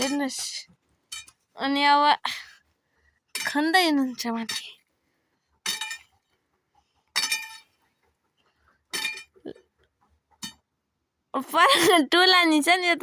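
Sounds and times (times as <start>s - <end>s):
metal tool striking stones: 0.0s - 1.5s, 3.3s - 4.8s, 5.6s - 6.2s, 7.1s - 7.8s, 8.9s - 9.4s, 10.4s - 10.6s.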